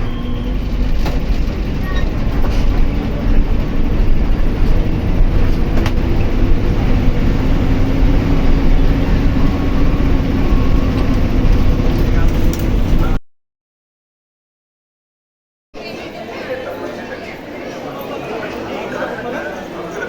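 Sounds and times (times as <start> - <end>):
train wheels rumbling: 0.0 - 13.2.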